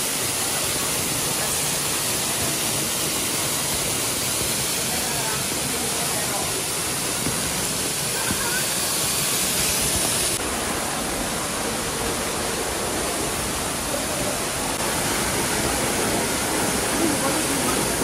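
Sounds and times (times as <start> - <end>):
waterfall roaring: 9.9 - 18.0.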